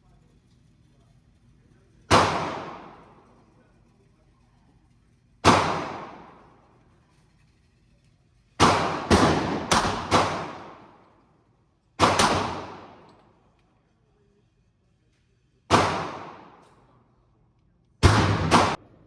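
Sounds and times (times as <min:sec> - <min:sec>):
gunshots with echo: 0:02.1 - 0:03.4, 0:05.4 - 0:06.5, 0:08.6 - 0:11.0, 0:12.0 - 0:13.1, 0:15.7 - 0:16.6, 0:18.0 - 0:19.0.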